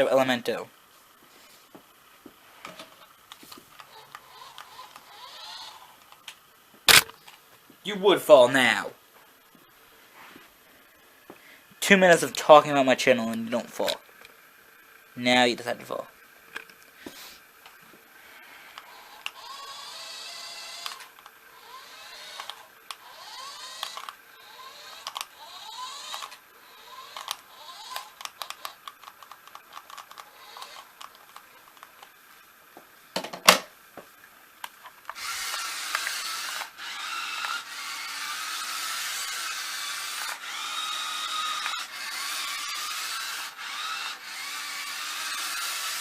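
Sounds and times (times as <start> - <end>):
toy car electric motors whirring: 2.6 - 7.4, 13.2 - 15.0, 15.9 - 32.3, 34.6 - 46.0
small plastic clicks: 2.7 - 5.2, 18.7 - 19.5, 20.7 - 21.4, 22.2 - 24.2, 24.8 - 32.2, 34.6 - 46.0.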